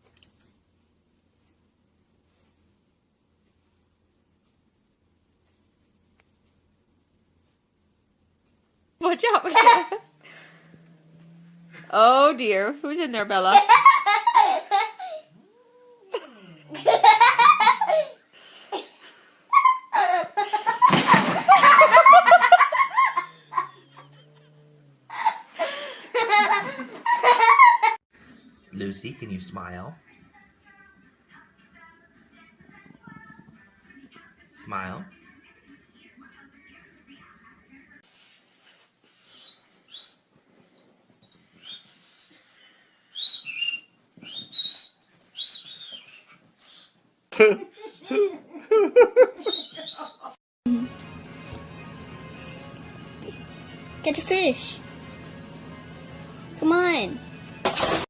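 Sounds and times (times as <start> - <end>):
dog whining: 15.0 - 16.8, 22.9 - 25.5
people laughing hard: 20.0 - 23.8.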